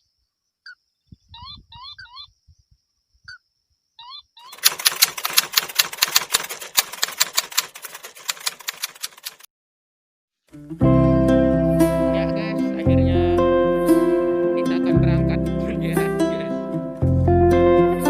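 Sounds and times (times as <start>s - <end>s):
rapid dry clicking rattle: 4.5s - 9.5s
music: 10.5s - 18.0s.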